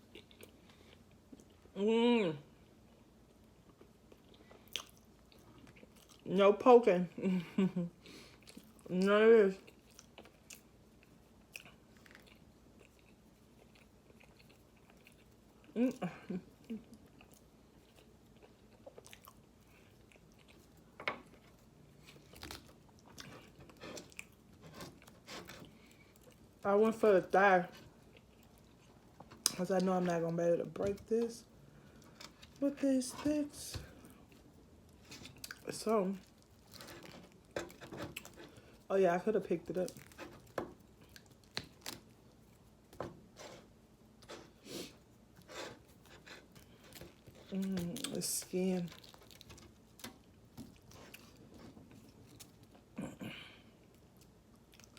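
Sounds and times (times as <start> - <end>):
soft chewing: 0.0 - 1.8, 2.5 - 6.3, 7.2 - 54.9
person chewing and biting food: 9.7 - 15.7.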